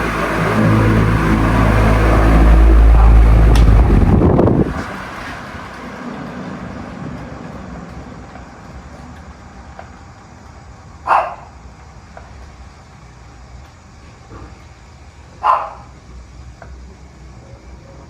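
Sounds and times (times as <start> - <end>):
wall fan spinning down: 0.0 - 8.3
dog barking: 11.1 - 11.5, 15.4 - 15.9.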